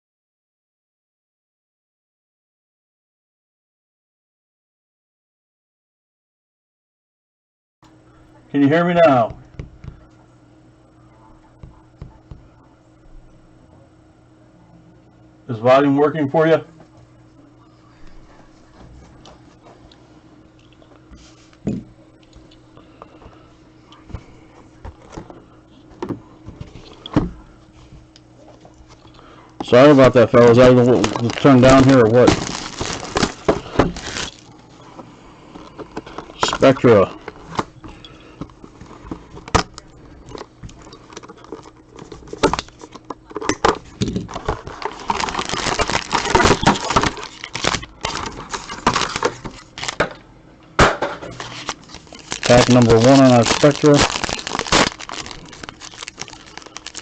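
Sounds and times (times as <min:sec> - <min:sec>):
faint electrical hum: 0:07.9 - 0:57.0
packaging crinkling: 0:29.7 - 0:34.6, 0:44.0 - 0:50.0, 0:51.3 - 0:57.0
packaging snapping and clicking: 0:44.3 - 0:50.0, 0:51.4 - 0:57.0.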